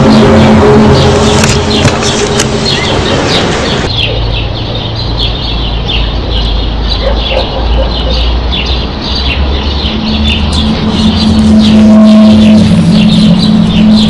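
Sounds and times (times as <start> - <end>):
low steady rumble: 0.0 - 4.9, 9.5 - 14.0
birds chirping: 0.0 - 14.0.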